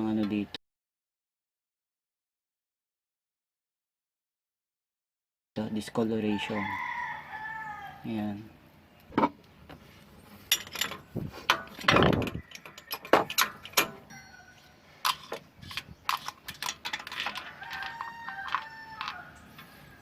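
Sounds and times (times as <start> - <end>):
metal scrape: 9.9 - 20.0
metallic clicks and clinks of tools: 10.5 - 14.2, 15.0 - 19.7.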